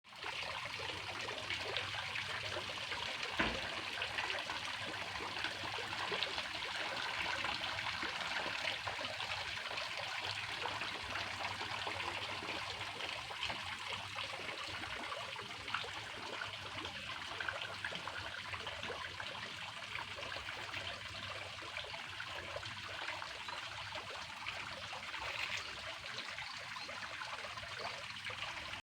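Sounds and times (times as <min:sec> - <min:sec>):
water trickling and flowing: 0:00.0 - 0:28.8
brief knock: 0:03.4 - 0:03.7.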